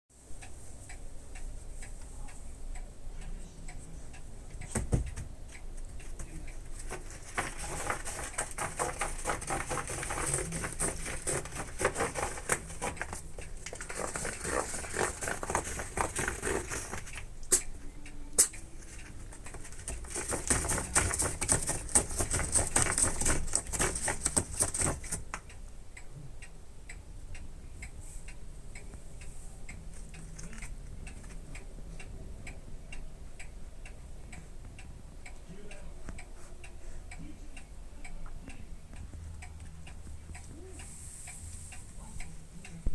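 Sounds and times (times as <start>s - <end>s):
clock ticking: 0.1s - 42.9s
cat claws scratching scratcher: 6.0s - 17.7s, 18.4s - 25.4s.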